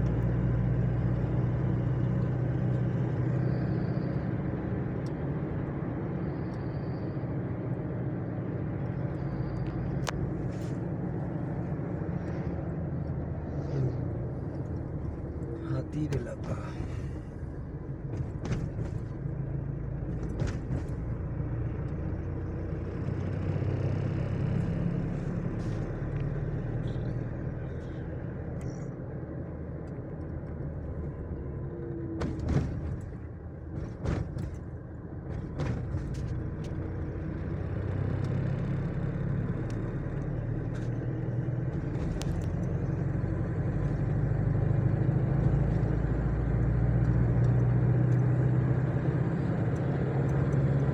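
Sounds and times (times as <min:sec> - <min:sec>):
vehicle engine and road noise: 0:00.0 - 0:50.9.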